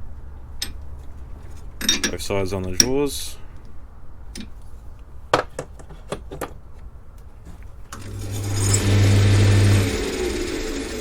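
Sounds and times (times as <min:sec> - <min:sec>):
metal clicks and clinks: 0:04.3 - 0:04.6
lathe motor hum: 0:08.0 - 0:11.0.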